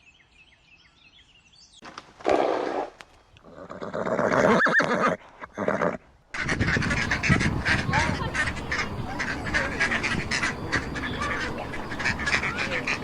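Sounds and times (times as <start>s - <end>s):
geese honking: 6.4s - 13.0s.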